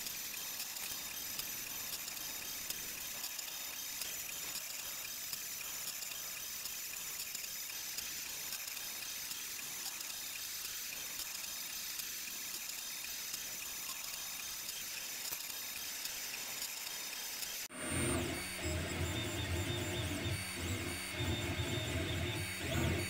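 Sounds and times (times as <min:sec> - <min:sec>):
faint mechanical ticks: 0:00.0 - 0:17.7
printer fan hiss: 0:00.0 - 0:23.0.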